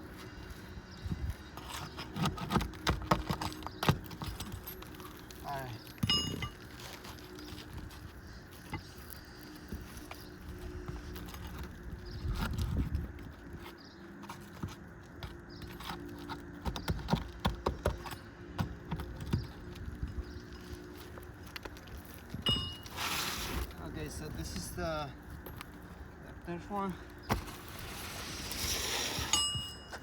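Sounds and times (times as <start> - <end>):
knocks and taps on shingle roof: 2.2 - 4.4, 14.2 - 20.0.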